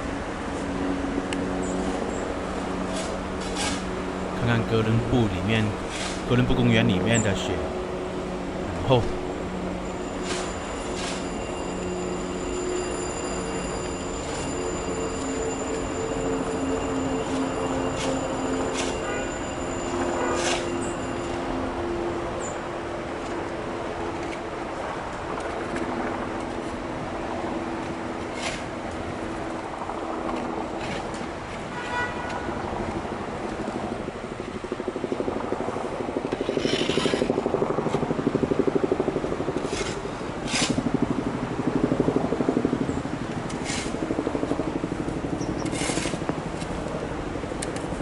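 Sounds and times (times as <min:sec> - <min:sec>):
city noise with low hum: 0:00.0 - 0:48.0.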